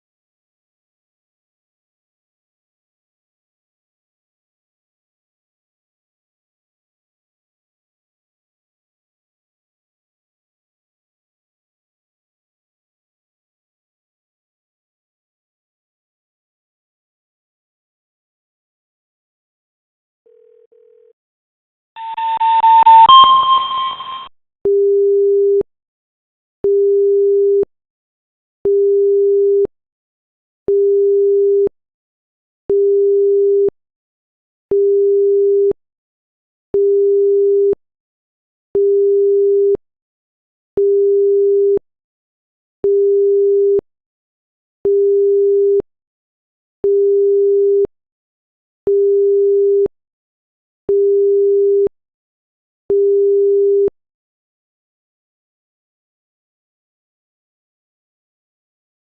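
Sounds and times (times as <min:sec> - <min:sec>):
low electronic beeps: 0:22.0 - 0:24.3
two-note electronic chime: 0:22.0 - 0:24.3.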